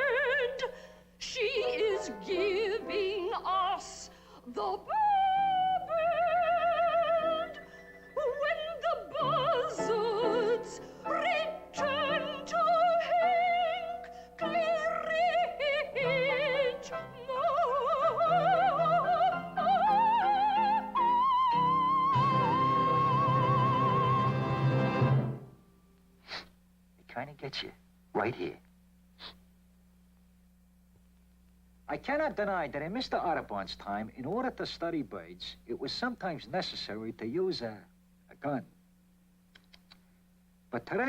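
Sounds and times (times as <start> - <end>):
woman singing operatically: 0.0 - 24.6
instrumental accompaniment: 19.3 - 25.6.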